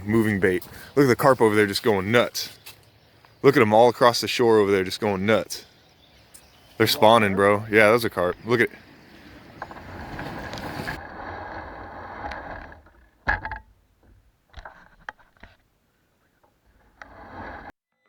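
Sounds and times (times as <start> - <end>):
scraping rustle: 9.2 - 13.1.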